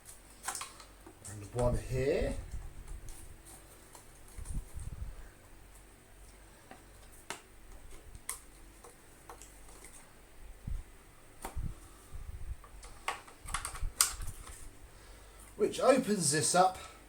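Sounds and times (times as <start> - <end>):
parts being handled: 0.0 - 10.3, 12.6 - 14.8.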